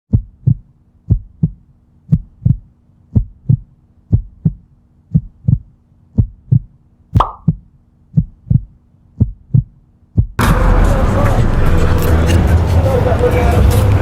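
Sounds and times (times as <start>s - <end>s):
faint steady hum: 0.1s - 10.4s
heartbeat thumps: 0.1s - 10.4s.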